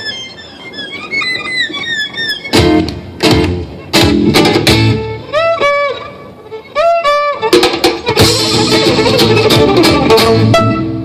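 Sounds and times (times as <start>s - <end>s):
violin phrases with sliding notes: 0.0s - 11.0s
guitar strummed chords: 8.0s - 11.0s.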